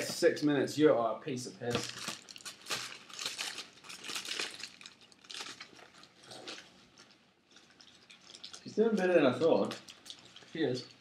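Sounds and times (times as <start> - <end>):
paper wrapper crinkling: 1.7 - 11.0
crunching while eating: 2.0 - 8.7.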